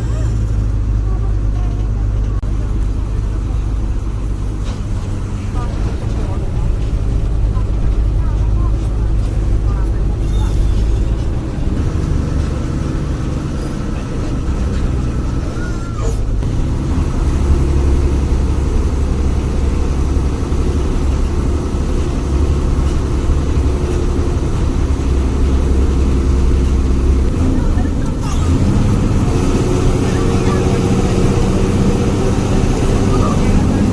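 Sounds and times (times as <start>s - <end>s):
bus diesel engine growling: 0.0s - 33.9s.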